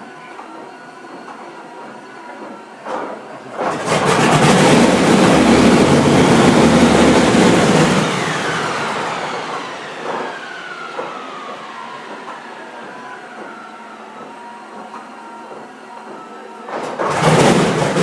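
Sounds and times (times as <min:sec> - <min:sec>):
radial aircraft engine running: 0:03.7 - 0:13.6.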